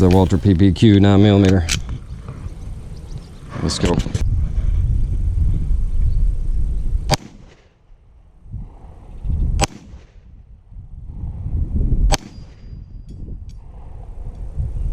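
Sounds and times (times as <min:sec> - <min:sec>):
pistol shots with echo: 0:07.1 - 0:07.7, 0:09.6 - 0:10.2, 0:12.1 - 0:12.7.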